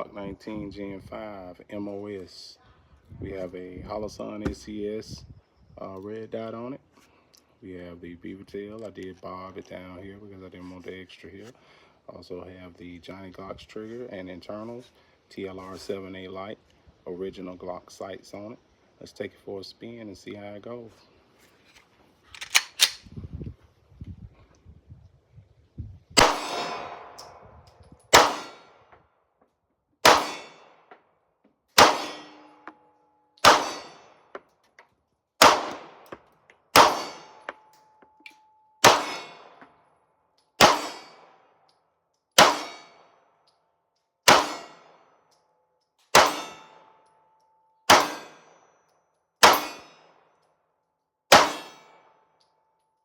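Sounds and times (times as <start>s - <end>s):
pistol shots: 26.2s - 27.4s, 28.1s - 28.8s, 30.0s - 30.9s, 31.8s - 32.7s, 33.4s - 34.2s, 35.4s - 37.6s, 38.8s - 39.6s, 40.6s - 41.4s, 42.4s - 42.9s, 44.3s - 44.9s, 46.1s - 46.9s, 47.9s - 48.4s, 49.4s - 50.0s, 51.3s - 52.0s.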